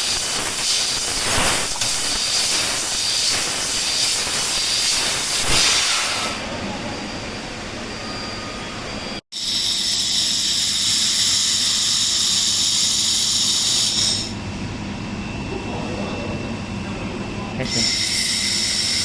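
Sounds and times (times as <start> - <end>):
laser welder high hiss: 0.0 - 6.4, 9.4 - 14.4
machine hum with faint whine: 11.6 - 19.0.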